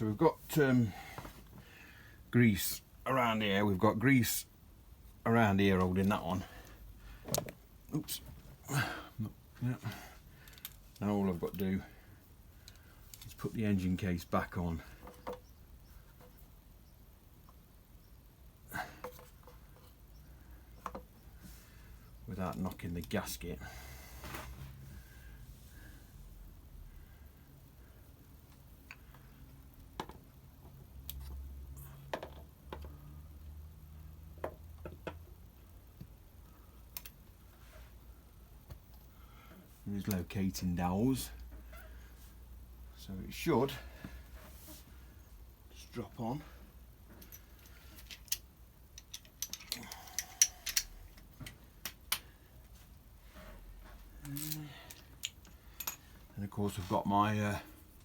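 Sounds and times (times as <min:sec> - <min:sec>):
low steady hum: 0:00.0 - 0:58.0
metal parts clicking and knocking: 0:47.1 - 0:52.3, 0:54.2 - 0:56.1.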